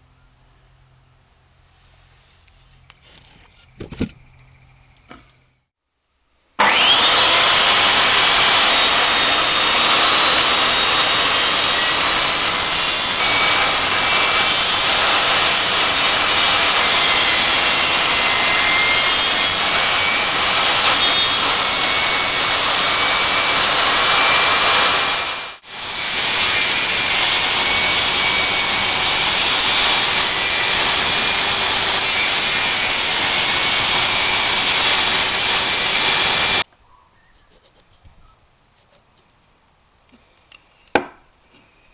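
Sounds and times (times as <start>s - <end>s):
wood lathe cutting wood: 6.6s - 36.6s.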